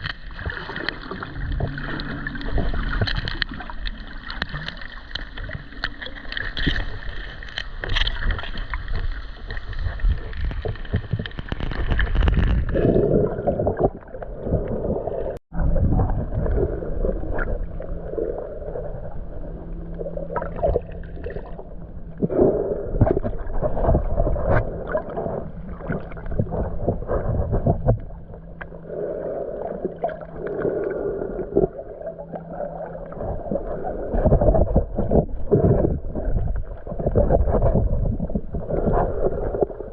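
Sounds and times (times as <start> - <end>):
underwater water sloshing: 0.0 - 39.9
steady low hum: 14.8 - 39.9.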